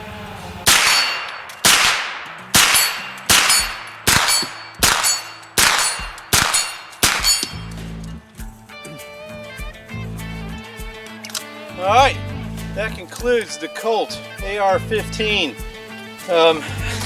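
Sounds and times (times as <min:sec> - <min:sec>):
music: 0:00.0 - 0:01.0, 0:06.0 - 0:17.0
rifle gunshots ringing: 0:00.7 - 0:07.7.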